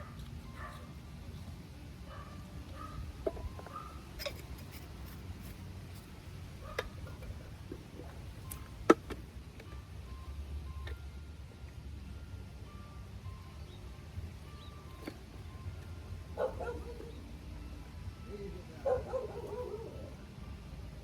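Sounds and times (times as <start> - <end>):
pipe fitting clicks and knocks: 3.2 - 4.8, 8.5 - 9.8.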